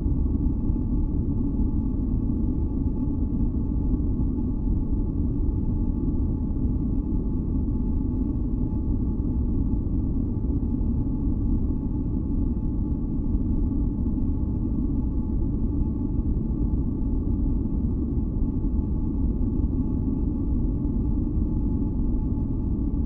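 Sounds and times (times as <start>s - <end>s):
deep low rumble noise: 0.0s - 23.0s.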